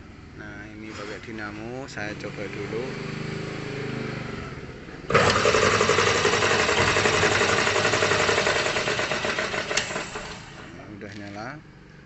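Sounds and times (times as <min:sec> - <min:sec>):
electric grinder running: 0:05.1 - 0:10.8.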